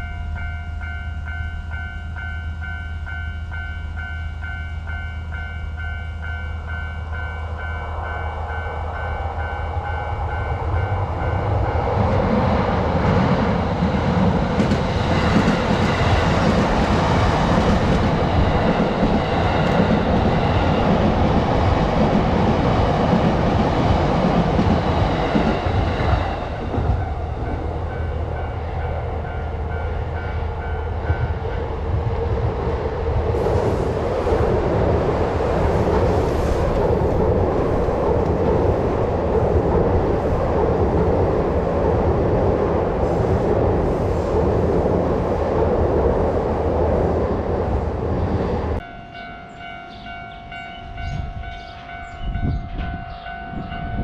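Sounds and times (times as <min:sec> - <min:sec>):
train passing: 0:00.0 - 0:54.0
level-crossing alarm bell ringing: 0:48.8 - 0:54.0.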